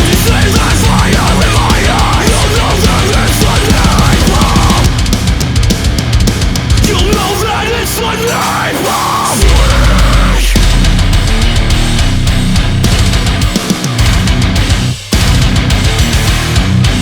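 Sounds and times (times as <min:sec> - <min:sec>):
fast drumming: 0:00.0 - 0:17.0
heavy rock music: 0:00.0 - 0:17.0.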